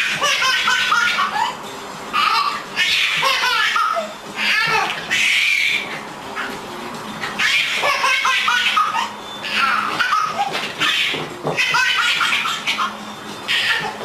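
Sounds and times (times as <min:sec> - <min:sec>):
pet calling: 0:02.2 - 0:06.6, 0:07.2 - 0:14.0.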